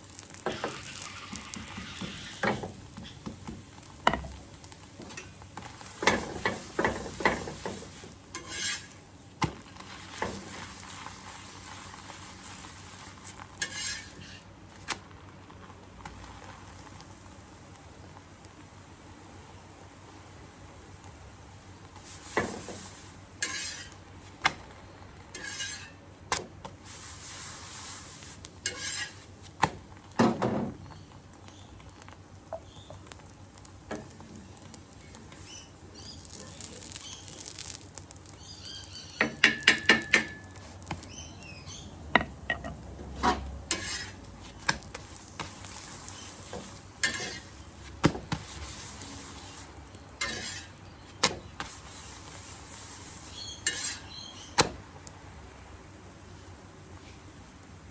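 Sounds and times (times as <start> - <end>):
metal utensils scraping a pan: 0.3 - 3.2, 6.0 - 9.0, 13.5 - 14.5, 22.3 - 24.0, 25.3 - 26.0, 28.6 - 29.2, 38.6 - 47.6, 48.5 - 50.8, 53.4 - 54.4.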